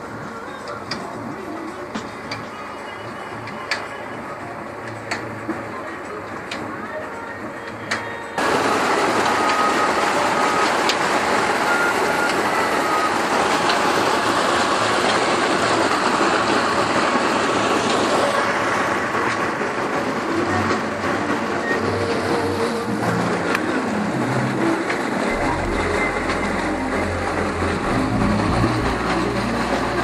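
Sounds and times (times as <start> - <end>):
irrigation water rushing: 8.4 - 30.0.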